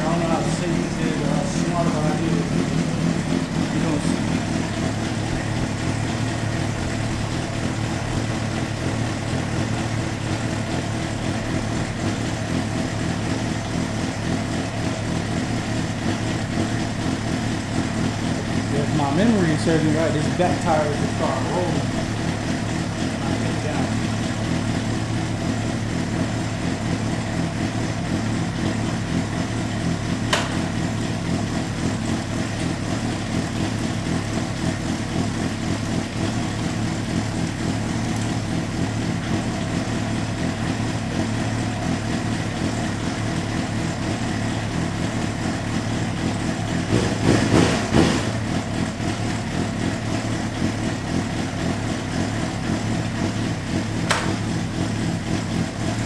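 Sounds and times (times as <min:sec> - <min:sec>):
motorcycle engine idling: 0:00.0 - 0:56.0
sharp click: 0:30.3 - 0:30.7, 0:54.0 - 0:54.4.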